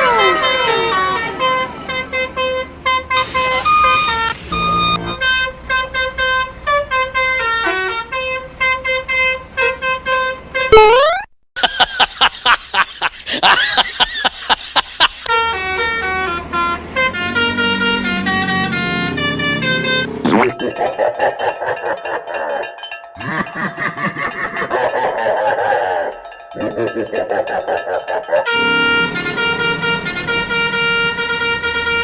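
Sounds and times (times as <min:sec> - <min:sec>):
musical bus horn tune: 0:00.0 - 0:10.9, 0:15.3 - 0:20.3, 0:28.4 - 0:32.0.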